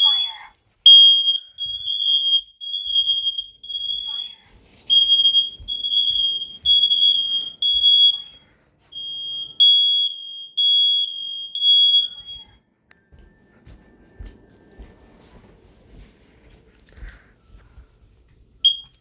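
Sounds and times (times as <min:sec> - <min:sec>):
smoke alarm beeping: 0:00.0 - 0:12.6, 0:18.6 - 0:19.0.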